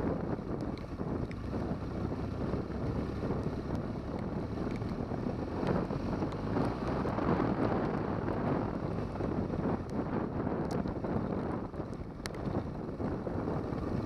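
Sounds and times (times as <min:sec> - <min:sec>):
motorcycle engine running: 0:00.0 - 0:14.0
wind noise on microphone: 0:00.0 - 0:14.0.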